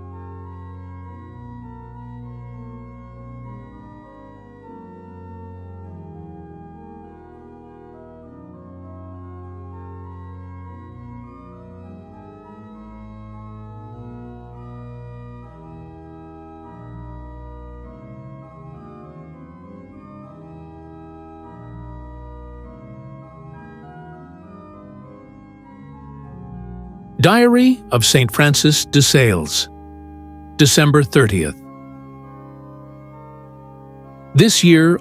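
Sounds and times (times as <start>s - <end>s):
organ music: 27.2s - 29.7s, 30.6s - 31.6s, 34.4s - 35.0s.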